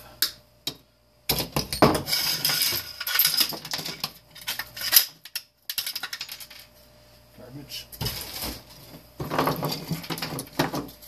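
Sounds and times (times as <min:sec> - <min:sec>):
metal and plastic parts clattering: 0:01.5 - 0:06.7, 0:09.2 - 0:11.0.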